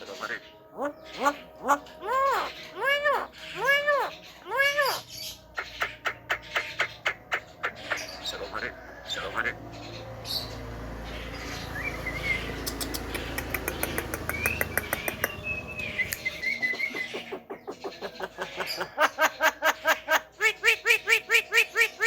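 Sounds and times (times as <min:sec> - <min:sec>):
harsh bird calls: 0:00.0 - 0:22.0
bird clicks: 0:12.6 - 0:16.4
bird whistled chirps: 0:13.8 - 0:18.0.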